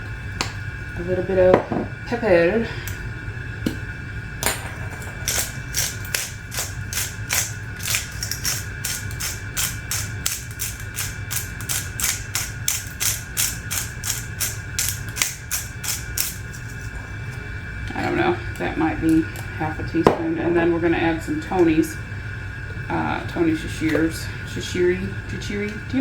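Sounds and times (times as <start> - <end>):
pepper mill ratcheting clicks: 5.3 - 16.6.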